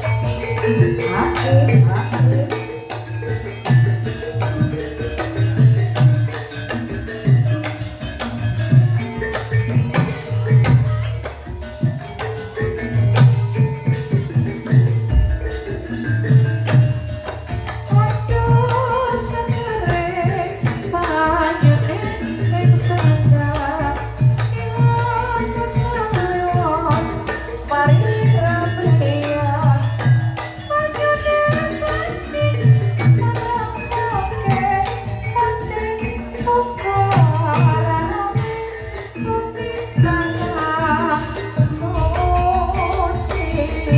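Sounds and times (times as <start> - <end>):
person singing wavering melody: 0.0 - 6.0, 7.0 - 43.9
struck metal instruments: 0.0 - 29.5, 40.4 - 43.9
drum strokes: 0.0 - 30.5, 39.2 - 43.9
pitched percussion: 0.0 - 43.9
low drum strokes: 41.8 - 43.9.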